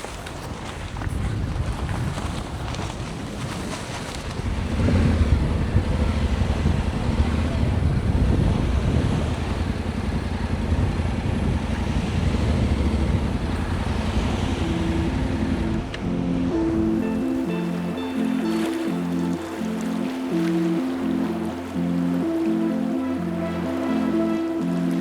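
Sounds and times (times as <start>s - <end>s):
wind buffeting microphone: 0.0s - 25.0s
music: 14.0s - 25.0s.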